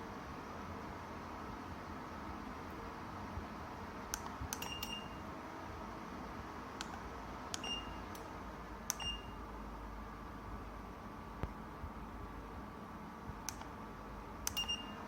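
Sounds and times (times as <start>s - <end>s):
short electronic beeps: 4.6s - 5.2s, 7.6s - 8.0s, 14.5s - 15.0s.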